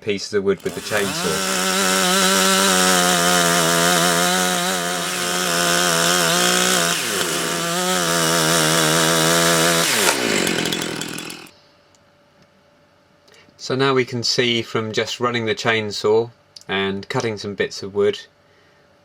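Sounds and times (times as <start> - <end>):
chainsaw cutting wood: 0.6 - 11.5.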